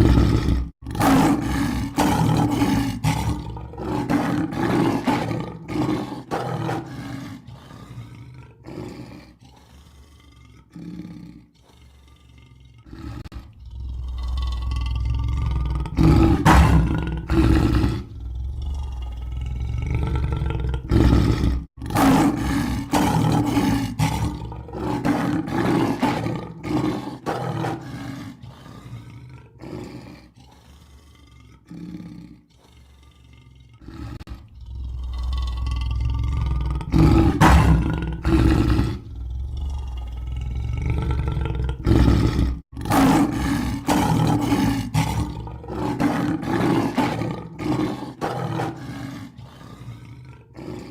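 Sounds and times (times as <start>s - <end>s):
lion grunts: 0.0s - 50.9s
lion roaring: 0.0s - 50.9s.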